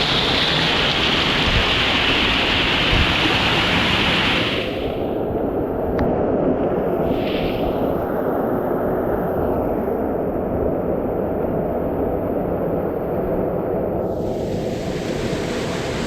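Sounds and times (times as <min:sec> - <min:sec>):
waterfall rushing water: 0:00.0 - 0:05.1, 0:14.2 - 0:16.0.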